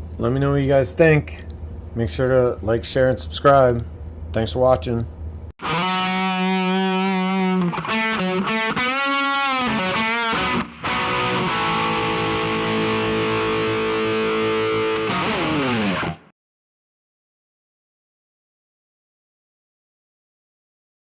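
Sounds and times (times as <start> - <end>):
distorted electric guitar: 5.6 - 16.3.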